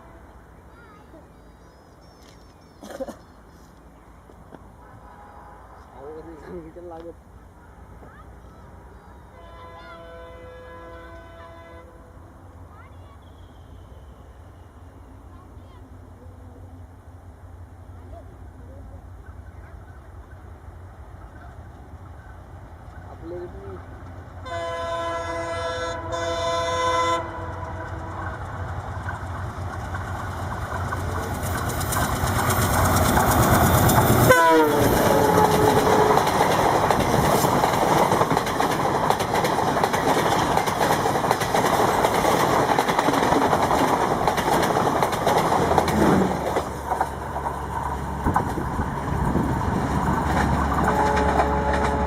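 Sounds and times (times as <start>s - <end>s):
diesel locomotive engine passing: 0.0s - 52.0s
train coaches with clattering wheels: 0.0s - 52.0s
locomotive horn: 4.8s - 6.0s, 9.3s - 12.2s, 24.4s - 28.3s, 34.2s - 36.3s, 50.8s - 52.0s.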